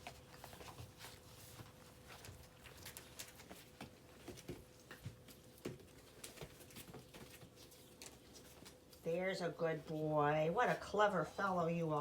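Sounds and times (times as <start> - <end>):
puppy claws tapping and scratching: 0.0 - 9.0.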